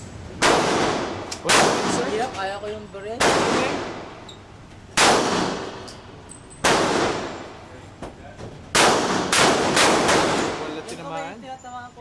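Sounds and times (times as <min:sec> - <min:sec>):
gunshots with ringing echo: 0:00.4 - 0:02.2, 0:03.2 - 0:04.2, 0:05.0 - 0:05.9, 0:06.6 - 0:07.5, 0:08.8 - 0:10.8.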